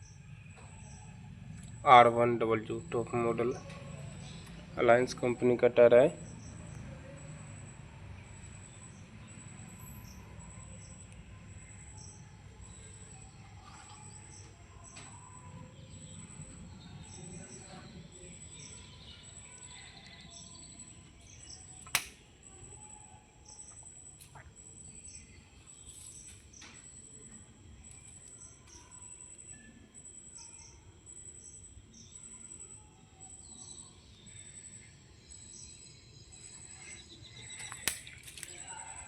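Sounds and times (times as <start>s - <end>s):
birds chirping: 0.0s - 39.0s
sharp click: 21.9s - 22.2s.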